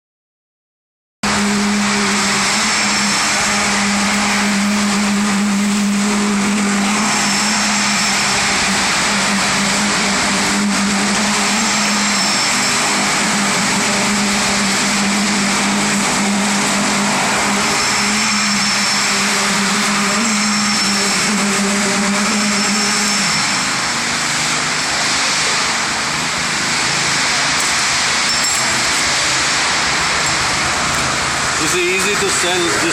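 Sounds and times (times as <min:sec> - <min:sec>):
road roller drone: 0:01.2 - 0:32.9.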